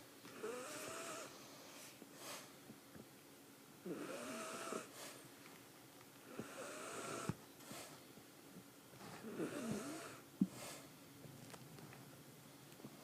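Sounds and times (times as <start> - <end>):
pet snoring with wheezy whistle: 0.4 - 2.5, 3.8 - 5.2, 6.3 - 7.9, 9.2 - 10.8.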